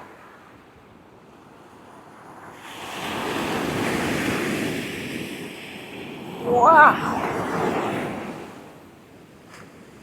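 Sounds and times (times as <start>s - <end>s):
high wind: 0.0s - 10.0s
waves breaking: 2.6s - 10.0s.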